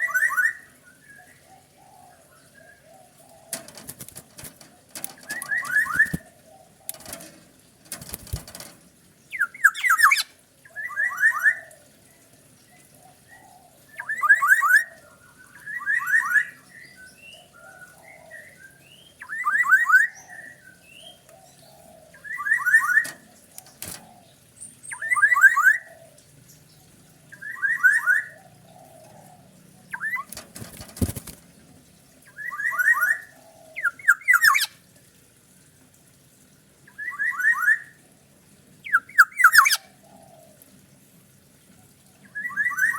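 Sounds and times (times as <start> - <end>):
soft bird chatter: 0.0 - 42.9
bird calling: 5.1 - 7.2, 9.3 - 11.7, 27.3 - 31.2, 32.3 - 34.8, 38.8 - 40.6.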